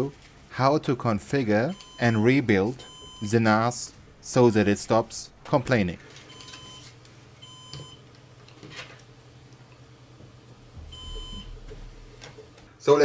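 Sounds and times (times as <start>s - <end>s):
alarm beeps: 1.8s - 3.4s, 6.3s - 8.0s, 10.9s - 11.6s.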